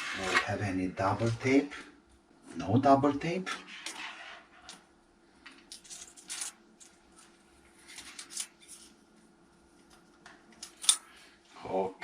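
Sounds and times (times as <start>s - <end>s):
rustles and scrapes of handling: 0.0s - 1.9s, 3.5s - 10.0s
faint steady hum: 0.0s - 12.0s.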